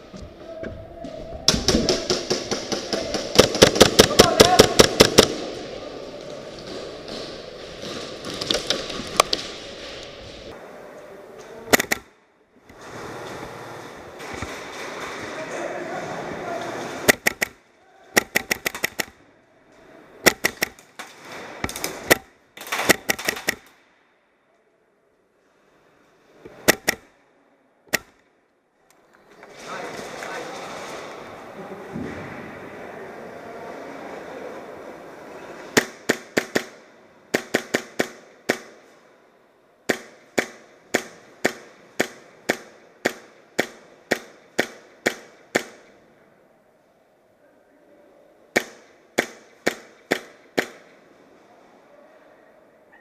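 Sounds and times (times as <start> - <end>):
airsoft guns firing: 1.5 - 5.8, 11.7 - 12.2, 17.0 - 19.2, 20.2 - 23.8, 26.6 - 27.1, 27.9 - 28.2, 35.7 - 39.0, 39.8 - 46.0, 48.5 - 51.0.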